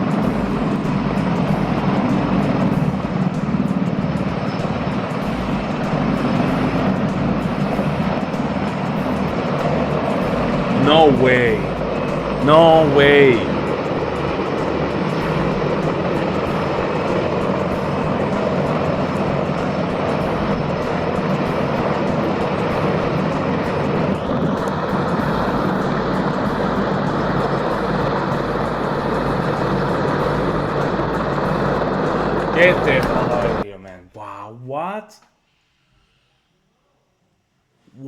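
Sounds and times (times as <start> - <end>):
helicopter engines and rotor: 0.0 - 33.6
higher whine: 0.0 - 33.6.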